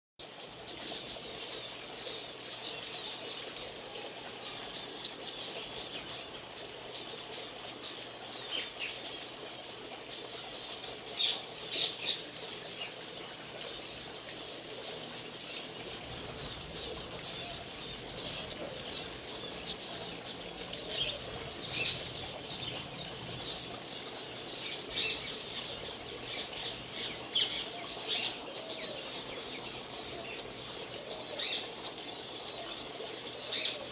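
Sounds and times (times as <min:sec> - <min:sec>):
birds chirping in chorus: 0:11.1 - 0:33.9.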